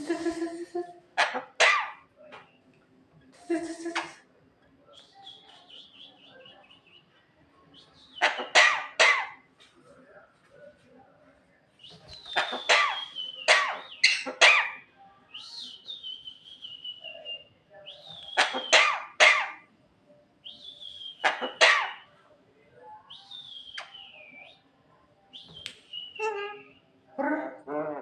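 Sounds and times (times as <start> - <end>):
bird mimicking coughing: 1.2 - 2.0, 8.2 - 9.4, 12.4 - 14.8, 18.4 - 19.6, 21.2 - 22.0.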